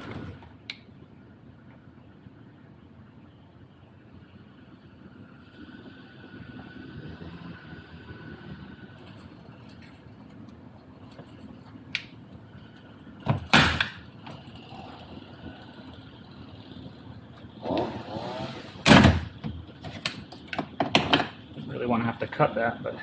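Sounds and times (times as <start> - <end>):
parts scraping or knocking: 17.6 - 21.4.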